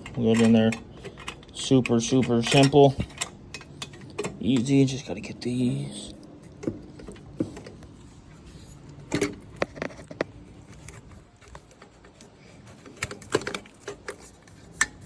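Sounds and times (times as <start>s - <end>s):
metal clinks and knocks: 0.0s - 4.8s.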